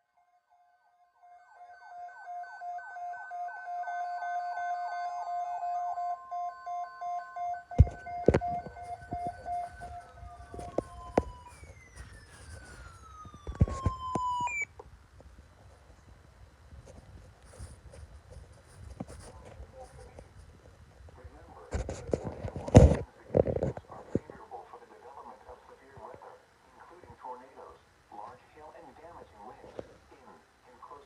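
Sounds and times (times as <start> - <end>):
siren wailing: 1.2 - 14.7.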